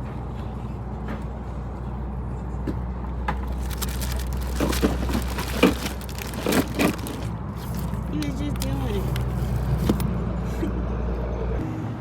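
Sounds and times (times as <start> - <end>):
knocks and clatters: 3.3 - 8.1.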